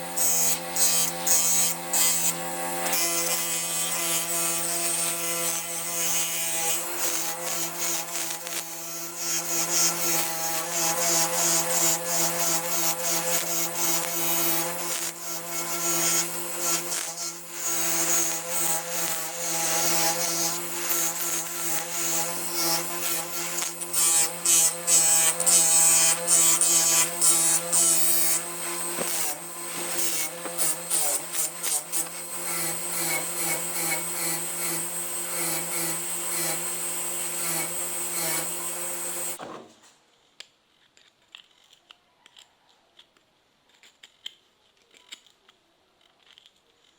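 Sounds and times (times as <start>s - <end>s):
small power tool grinding: 0.0s - 39.4s.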